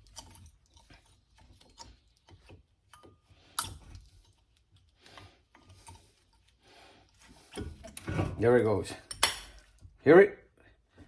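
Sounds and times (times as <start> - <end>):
metallic clicks and scrapes: 0.0 - 8.1.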